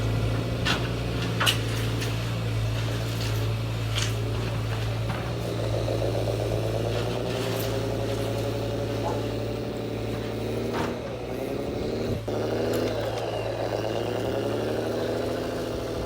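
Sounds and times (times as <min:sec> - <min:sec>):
motor humming with whine: 0:04.0 - 0:16.0.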